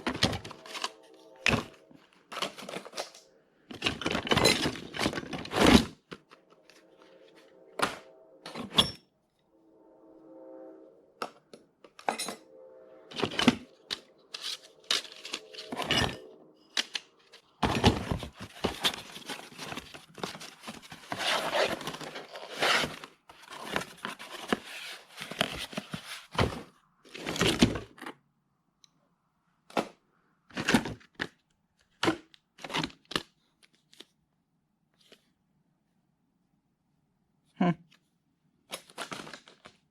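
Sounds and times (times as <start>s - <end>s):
packaging rustling: 13.1s - 26.5s.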